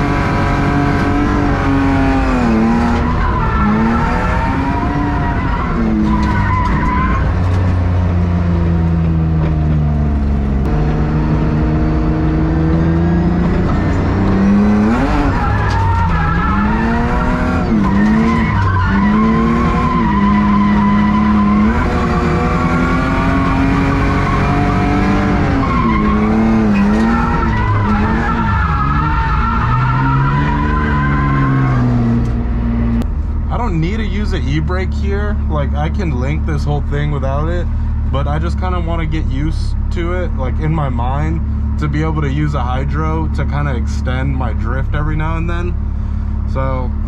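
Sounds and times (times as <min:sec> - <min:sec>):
car engine revving: 0:00.0 - 0:47.0
tyres skidding: 0:00.0 - 0:47.0.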